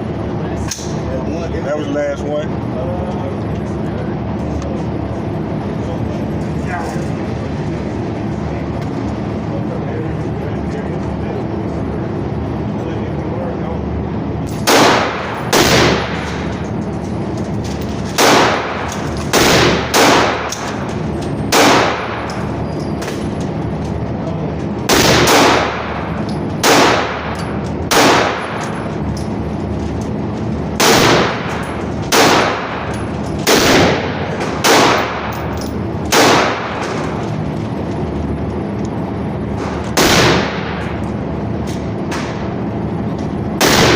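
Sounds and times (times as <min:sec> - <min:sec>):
steady background noise: 0:00.0 - 0:43.9
gunshots with echo: 0:14.6 - 0:16.5, 0:18.2 - 0:20.9, 0:21.5 - 0:22.4, 0:24.9 - 0:28.8, 0:30.8 - 0:35.5, 0:36.1 - 0:37.2, 0:43.6 - 0:43.9.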